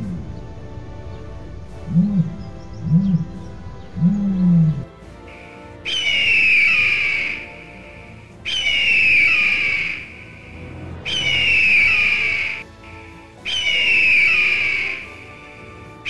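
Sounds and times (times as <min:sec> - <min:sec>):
background music: 0:00.0 - 0:16.0
dinosaur screeching calls: 0:05.9 - 0:12.6, 0:13.5 - 0:15.6.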